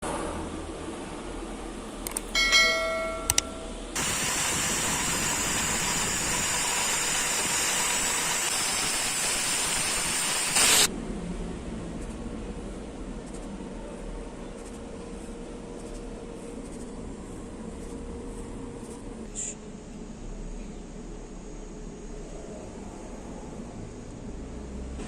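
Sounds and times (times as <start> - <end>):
ringing metal clinks: 2.3 - 3.9
welding arc crackling hiss: 4.0 - 10.9.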